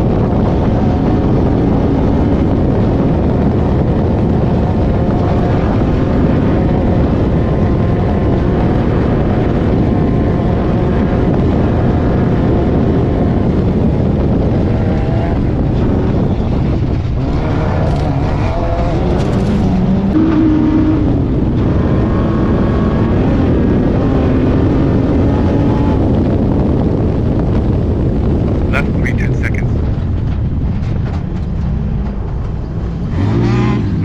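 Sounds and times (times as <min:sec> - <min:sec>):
race car engine running hard: 0:00.0 - 0:34.0
rush of noise: 0:28.7 - 0:29.7.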